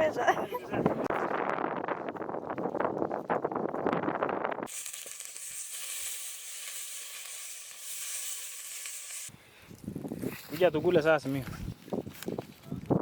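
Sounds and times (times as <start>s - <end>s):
low dense crackling: 1.0s - 9.3s
food sizzling in hot oil: 4.7s - 9.3s.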